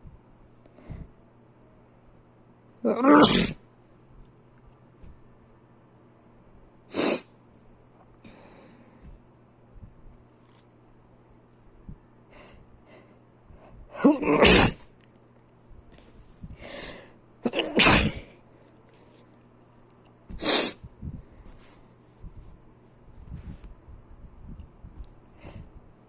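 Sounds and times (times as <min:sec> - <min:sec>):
person sneezing: 0:02.9 - 0:03.6, 0:06.9 - 0:07.3, 0:14.0 - 0:14.8, 0:17.5 - 0:18.3, 0:20.4 - 0:20.8.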